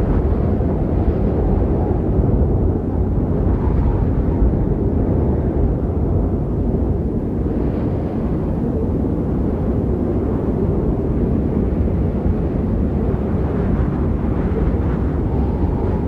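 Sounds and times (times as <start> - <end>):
deep rumbling wind: 0.0 - 16.0.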